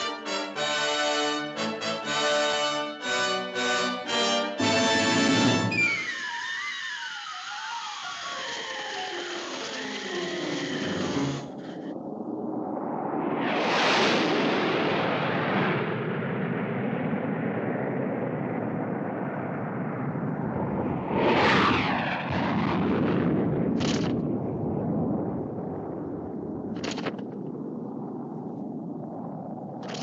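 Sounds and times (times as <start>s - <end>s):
cartoon explosions: 0.0s - 7.0s.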